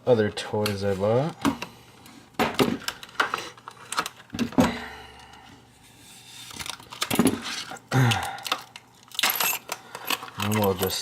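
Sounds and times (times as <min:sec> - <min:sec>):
packaging handling: 0:06.2 - 0:11.0.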